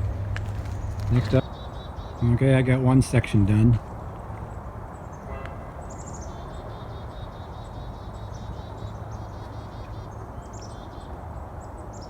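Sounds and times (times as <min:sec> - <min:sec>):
low rumble: 0:00.0 - 0:01.4
small birds chirping: 0:00.0 - 0:12.0.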